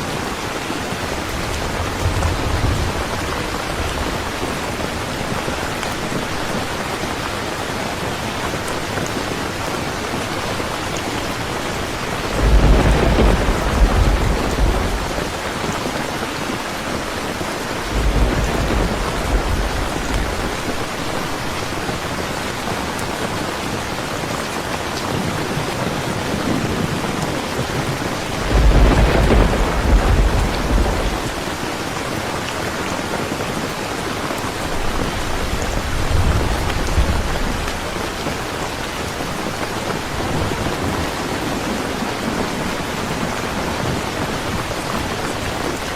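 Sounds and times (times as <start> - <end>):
heavy rain: 0.0 - 45.9
thunder rumbling: 0.1 - 6.5, 10.3 - 22.1, 26.4 - 31.9, 34.6 - 45.9.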